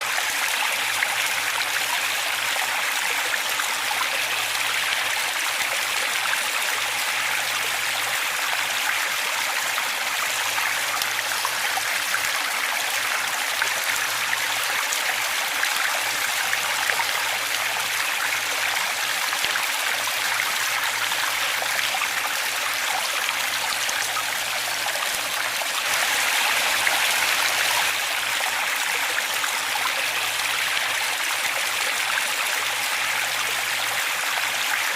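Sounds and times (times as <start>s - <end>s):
waterfall rushing and splashing: 0.0s - 34.9s.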